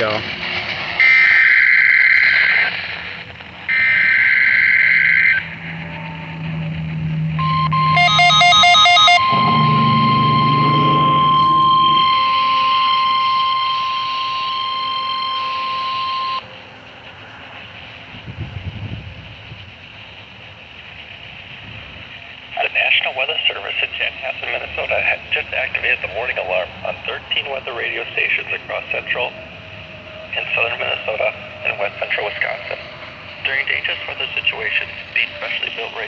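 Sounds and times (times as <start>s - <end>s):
weather radio warning alarm tone: 1.0s - 2.8s, 3.7s - 16.4s, 22.6s - 36.0s
screeching digital header bursts: 1.0s - 16.4s
rapid electronic beeping: 6.4s - 16.4s.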